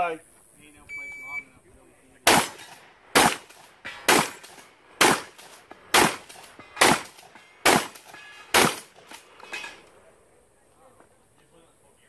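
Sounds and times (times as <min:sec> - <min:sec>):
gunshots: 0:02.2 - 0:09.2.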